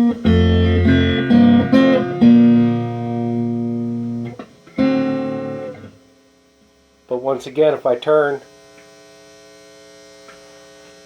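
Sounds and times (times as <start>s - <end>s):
electric guitar playing: 0.0s - 6.0s.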